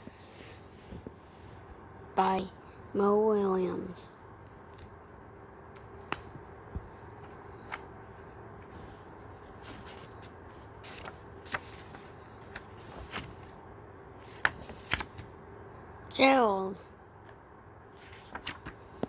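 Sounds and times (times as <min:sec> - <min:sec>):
faint steady hum: 0:00.0 - 0:19.0
book pages turning: 0:05.8 - 0:15.4, 0:17.2 - 0:19.0.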